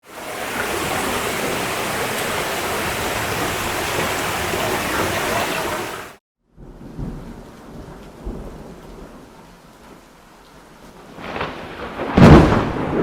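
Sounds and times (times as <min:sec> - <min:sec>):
rushing falling water: 0:00.0 - 0:06.2.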